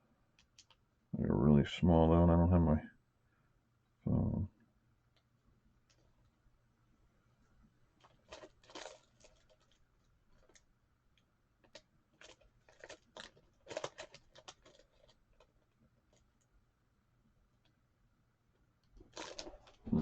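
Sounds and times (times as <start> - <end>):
trading cards and packaging rustling: 8.0 - 10.6, 11.6 - 16.3, 19.0 - 20.0.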